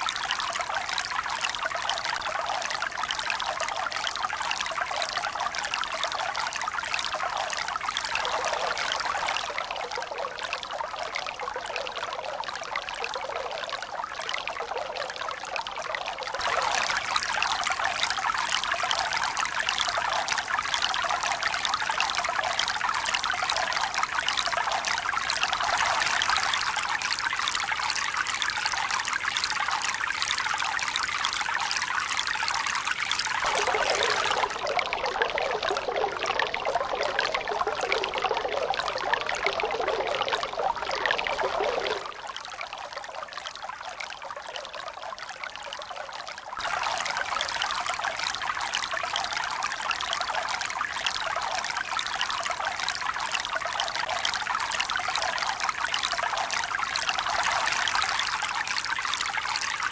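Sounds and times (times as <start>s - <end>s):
running water: 16.3s - 42.4s, 46.6s - 59.9s.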